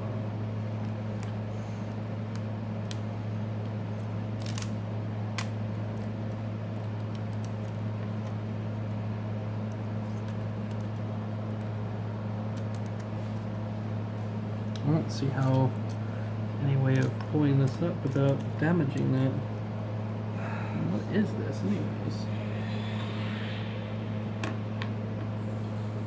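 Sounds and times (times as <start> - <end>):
low electrical hum: 0.0 - 26.0.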